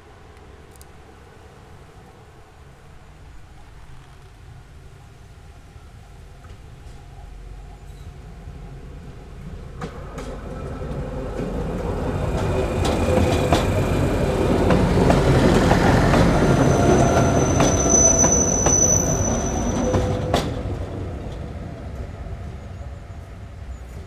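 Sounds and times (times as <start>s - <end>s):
train rumbling past: 6.0s - 24.0s
high wheel squeal: 11.6s - 20.8s.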